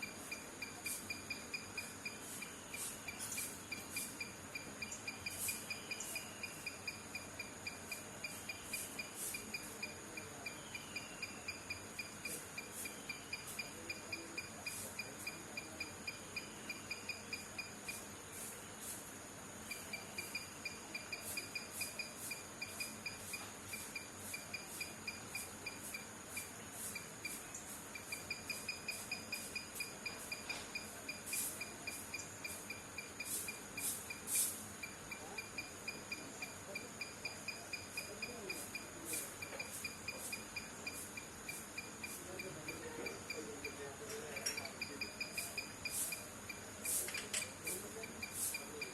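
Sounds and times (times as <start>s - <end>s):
high-pitched insect trill: 0.0s - 48.9s
insects chirping rhythmically: 0.0s - 48.9s
sharp high clicks: 19.7s - 48.9s.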